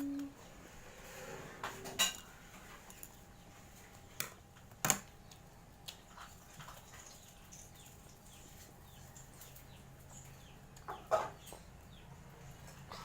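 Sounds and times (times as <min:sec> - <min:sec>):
cutlery clinking against plate: 0:01.8 - 0:03.2.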